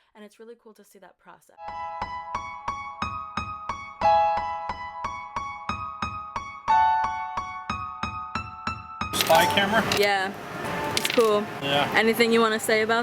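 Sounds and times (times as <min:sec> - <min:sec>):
electric piano chords: 0:01.6 - 0:11.6.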